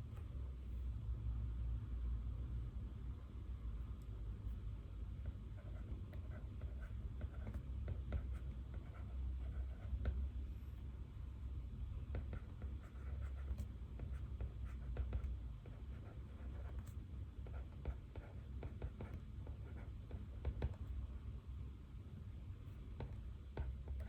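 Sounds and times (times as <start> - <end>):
low room hum: 0.0 - 24.0
pen writing on paper: 5.6 - 10.2, 12.1 - 20.8, 23.0 - 24.0.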